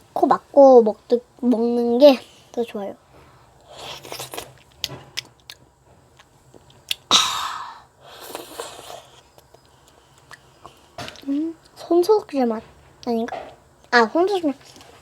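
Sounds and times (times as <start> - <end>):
child chewing candy: 3.6 - 7.1, 7.7 - 11.8
lip smacks: 3.6 - 7.2, 8.1 - 11.3
breathy bursts: 7.1 - 9.1.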